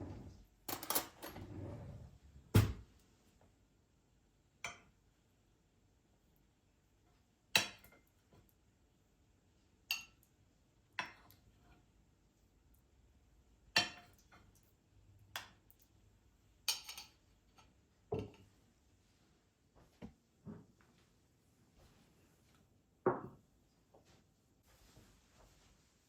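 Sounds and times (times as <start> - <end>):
dishes clinking and knocking: 18.1 - 18.5, 23.1 - 23.4.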